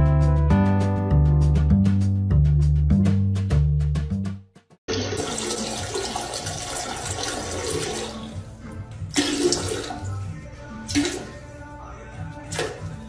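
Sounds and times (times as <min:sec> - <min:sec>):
water rushing: 0:09.2 - 0:10.2.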